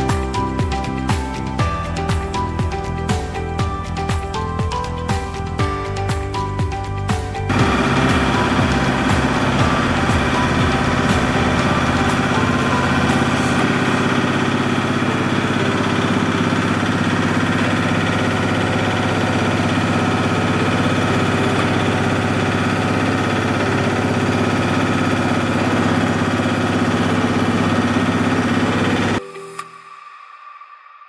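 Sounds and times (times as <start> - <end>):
rotary drying machine humming: 7.5 - 29.2.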